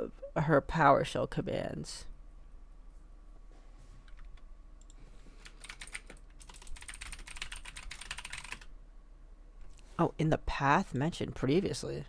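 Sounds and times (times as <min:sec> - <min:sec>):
typing on computer keyboard: 0:04.1 - 0:08.7.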